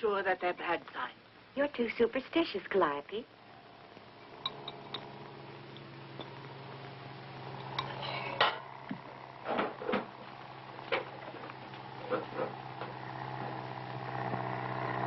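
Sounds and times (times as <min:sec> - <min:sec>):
steady low hum: 0:00.0 - 0:15.0
dishes and cutlery clinking: 0:04.4 - 0:05.1, 0:07.6 - 0:08.6.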